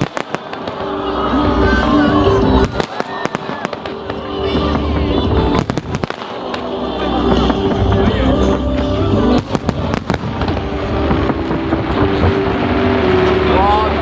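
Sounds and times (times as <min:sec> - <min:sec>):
fireworks bangs: 0:00.0 - 0:14.0
show music: 0:00.0 - 0:14.0
low rumble: 0:06.7 - 0:14.0.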